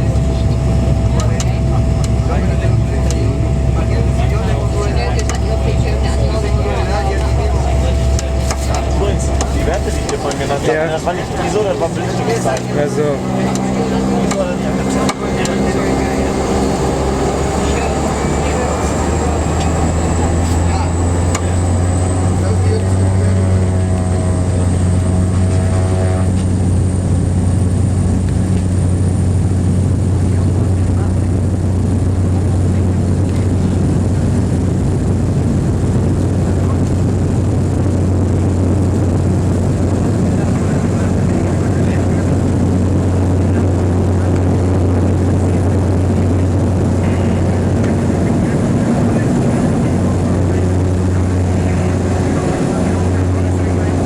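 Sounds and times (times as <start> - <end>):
higher tones: 0.0 - 27.7
high engine whine: 0.0 - 54.0
turboprop engine drone: 0.0 - 54.0.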